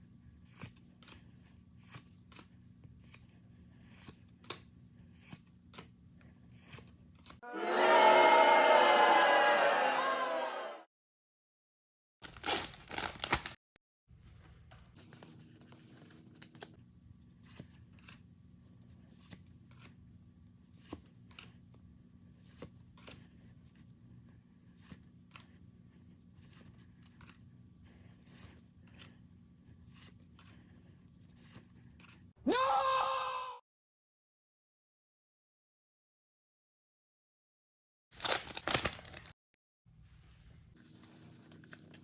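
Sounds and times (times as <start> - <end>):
foil wrapper ripping: 12.2 - 13.6, 38.2 - 39.3.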